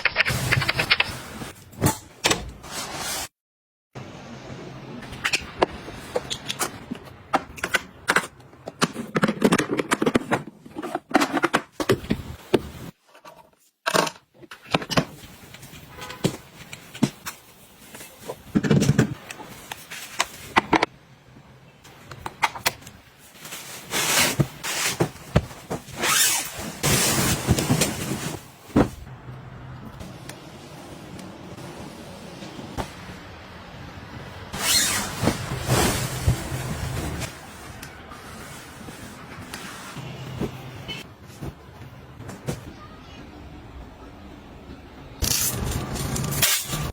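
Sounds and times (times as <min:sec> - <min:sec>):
rustling and scraping: 0:23.2 - 0:29.0, 0:34.6 - 0:42.7.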